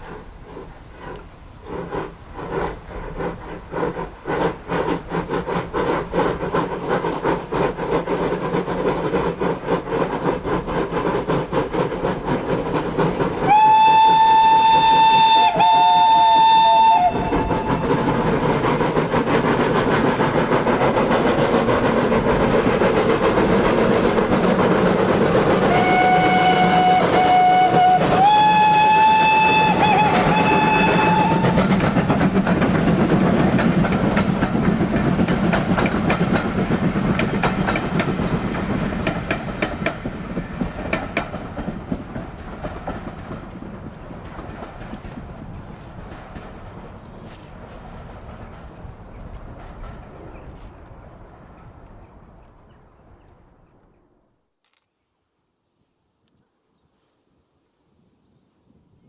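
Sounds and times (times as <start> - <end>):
steam locomotive running fast: 0.0 - 52.8
train wheel clatter: 0.0 - 53.4
steam whistle blasts: 13.4 - 18.1, 25.7 - 31.6.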